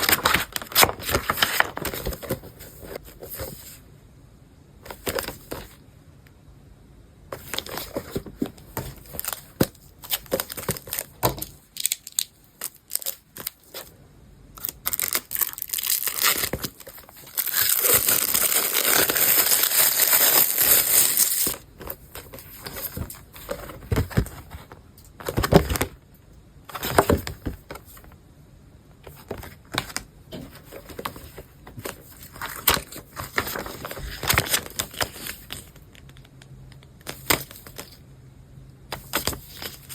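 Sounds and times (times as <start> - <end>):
packaging crinkling and rustling: 0.0 - 3.8, 7.4 - 13.9, 14.6 - 26.0, 29.1 - 36.3
packaging tearing: 14.6 - 21.6.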